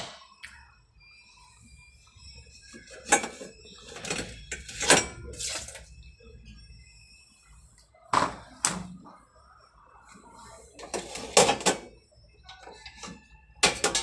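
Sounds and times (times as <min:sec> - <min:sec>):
dishes knocking and clinking: 0:10.8 - 0:12.0, 0:12.6 - 0:14.0.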